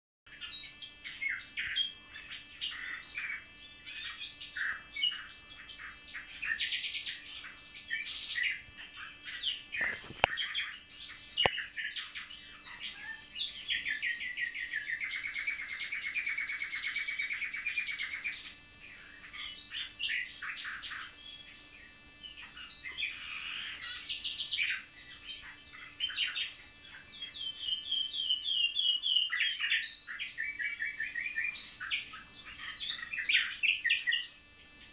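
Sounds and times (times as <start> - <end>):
birds singing: 0.3 - 34.9
rapid pulsed bird rattle: 9.7 - 10.5.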